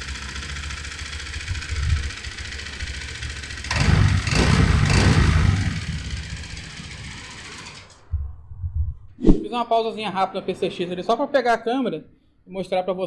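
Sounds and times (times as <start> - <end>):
scooter engine revving: 0.0 - 8.4, 9.8 - 11.8.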